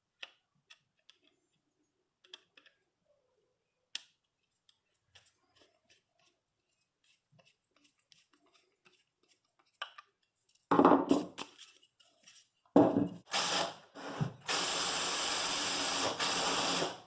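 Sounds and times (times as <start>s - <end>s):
power drill boring into wood: 13.3s - 17.0s.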